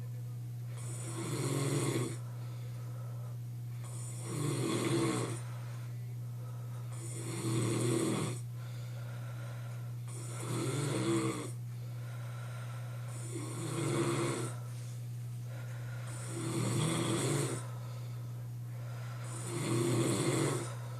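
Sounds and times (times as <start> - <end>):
steady low hum: 0.0 - 20.9
man snoring: 0.8 - 2.3, 3.8 - 5.5, 6.9 - 8.5, 10.0 - 11.6, 13.0 - 14.7, 15.8 - 17.8, 18.8 - 20.9.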